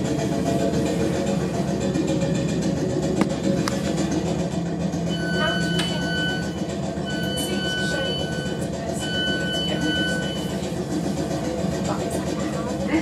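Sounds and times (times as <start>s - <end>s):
train rumble: 0.0s - 13.0s
train door warning beeps: 5.1s - 10.6s.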